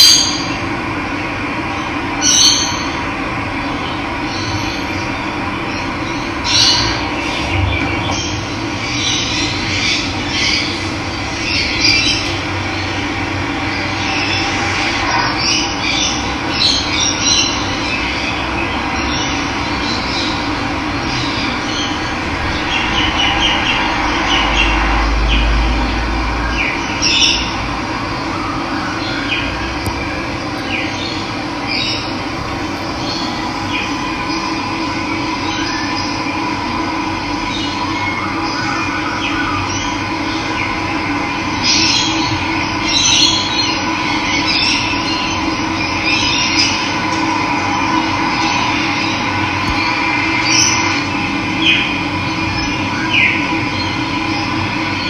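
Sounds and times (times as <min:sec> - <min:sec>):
birds chirping: 0:29.0 - 0:36.3.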